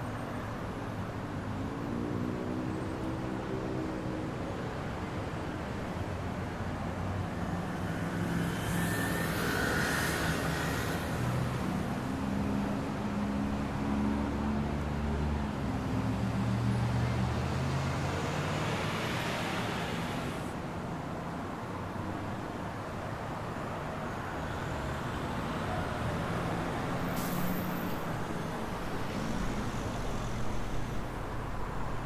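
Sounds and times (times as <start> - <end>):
road noise: 0.0 - 32.0.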